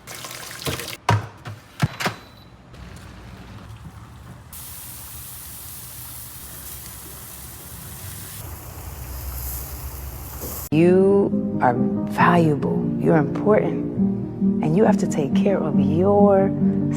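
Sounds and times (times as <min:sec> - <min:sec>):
food sizzling on a pan: 0:04.6 - 0:10.7.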